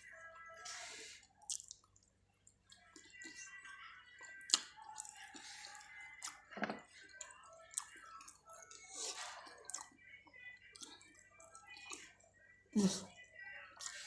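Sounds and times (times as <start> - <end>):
wet chewing and sucking: 0.6 - 3.5, 4.3 - 9.9, 11.7 - 12.2.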